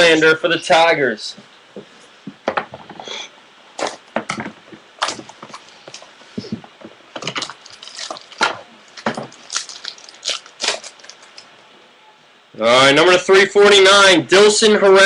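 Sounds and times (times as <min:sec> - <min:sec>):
packaging crinkling: 0:07.2 - 0:11.5.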